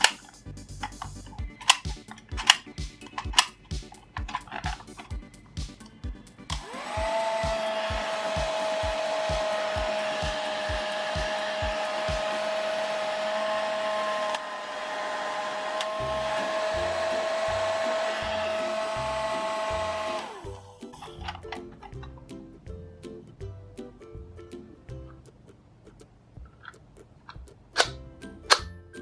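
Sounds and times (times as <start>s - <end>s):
small electric motor whirring: 6.5s - 20.5s.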